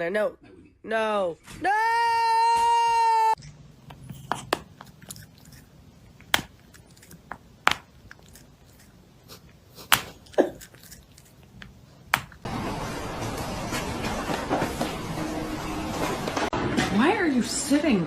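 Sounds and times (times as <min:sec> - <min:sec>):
cat chewing with crunches: 0:03.9 - 0:12.5.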